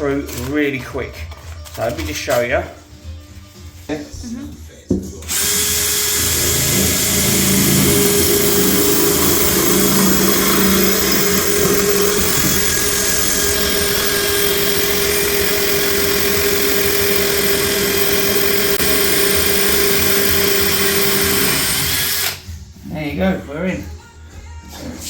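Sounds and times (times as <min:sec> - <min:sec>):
power drill grinding porcelain: 0:05.3 - 0:22.4.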